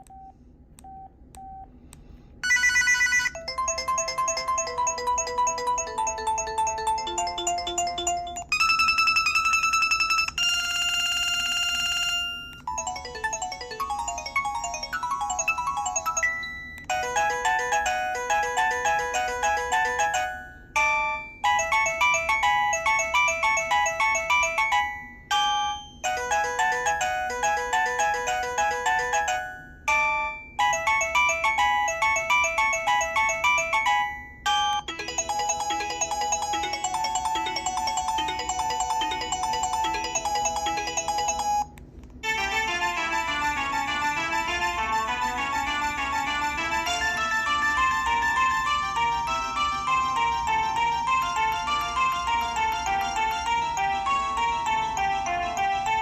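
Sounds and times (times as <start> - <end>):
cell phone ringtones: 2.4 - 56.0.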